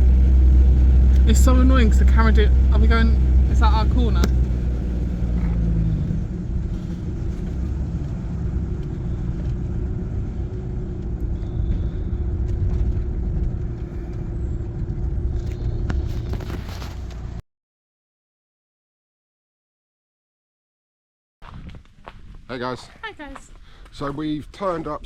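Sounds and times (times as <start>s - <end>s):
van engine and road rumble: 0.0s - 17.4s.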